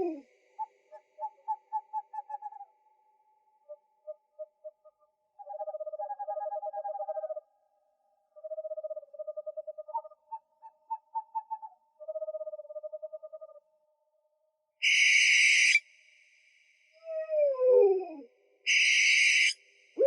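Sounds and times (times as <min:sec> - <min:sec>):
owls hooting: 0:00.0 - 0:00.2.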